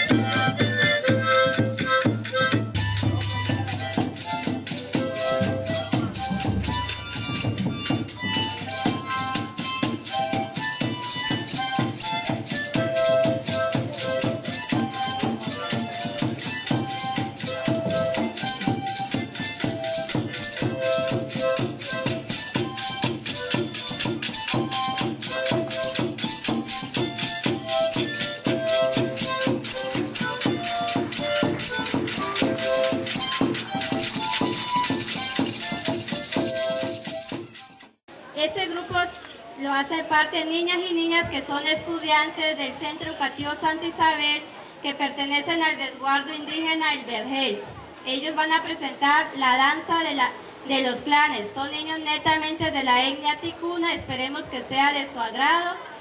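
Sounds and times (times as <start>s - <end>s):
short pitched melody notes: 0.0s - 10.6s
shaken rattles beat: 0.0s - 38.0s.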